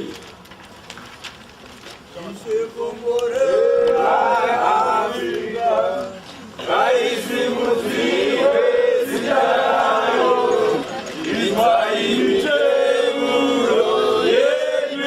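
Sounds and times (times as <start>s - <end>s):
crowd singing a chant: 3.2s - 15.0s.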